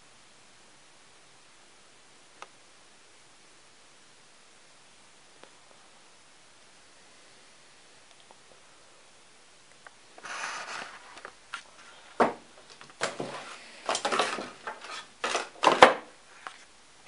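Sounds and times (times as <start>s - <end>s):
rustling of packaging: 10.2s - 16.7s
light clatter of parts: 11.2s - 16.6s
clicks of parts: 12.7s - 16.6s.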